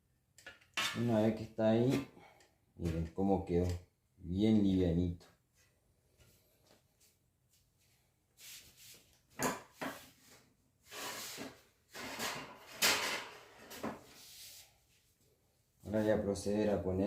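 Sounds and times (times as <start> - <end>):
fan parts scraping and knocking: 11.0 - 14.1.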